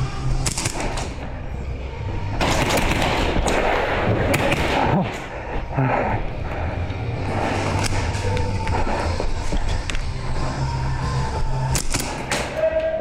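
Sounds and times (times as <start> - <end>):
airsoft guns firing rapidly: 0.4 - 1.1, 2.4 - 3.5.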